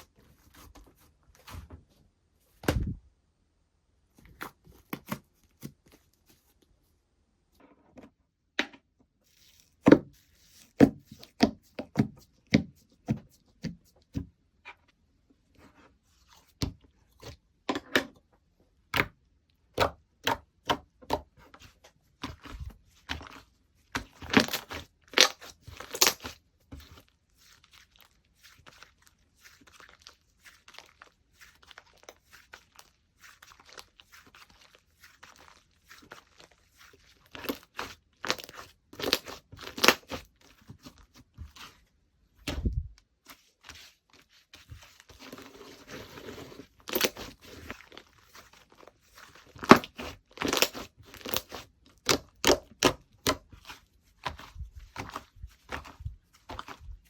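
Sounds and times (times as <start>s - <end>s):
slime squished by hand: 22.1s - 41.7s, 46.6s - 57.0s.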